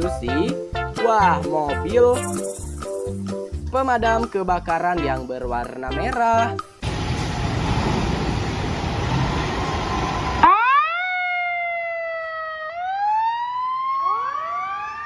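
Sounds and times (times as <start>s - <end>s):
fire engine siren wailing: 6.9s - 15.0s.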